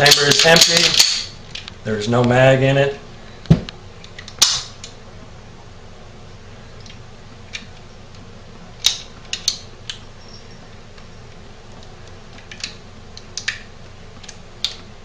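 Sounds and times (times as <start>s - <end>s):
pistol metal clicks: 0.1s - 1.7s.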